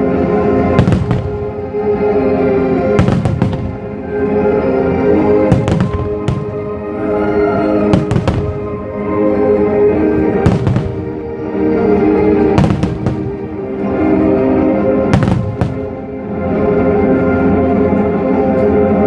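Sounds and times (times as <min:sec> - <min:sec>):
music: 0:00.0 - 0:19.0
fireworks bangs: 0:00.6 - 0:01.7, 0:02.8 - 0:04.0, 0:05.4 - 0:06.8, 0:07.8 - 0:08.8, 0:10.2 - 0:11.2, 0:12.4 - 0:13.6, 0:15.1 - 0:16.0.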